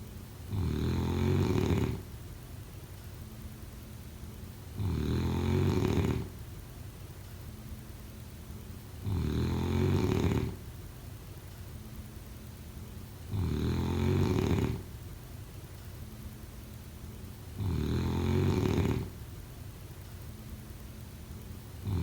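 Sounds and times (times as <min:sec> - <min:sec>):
quiet breathing: 0:00.0 - 0:02.1, 0:17.5 - 0:19.3, 0:21.8 - 0:22.0
person snoring: 0:00.5 - 0:02.0, 0:04.8 - 0:06.3, 0:09.0 - 0:10.6, 0:13.3 - 0:14.8, 0:17.6 - 0:19.2.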